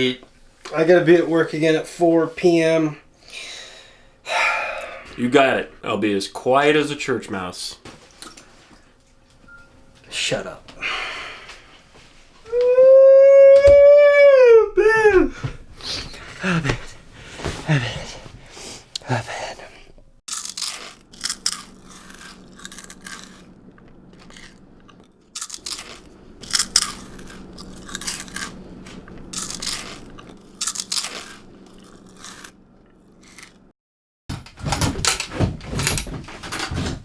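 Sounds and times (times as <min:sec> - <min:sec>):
voice-like falling wail: 0:12.5 - 0:15.5
low steady hum: 0:13.8 - 0:33.7
crunching of chewed food: 0:20.3 - 0:33.7.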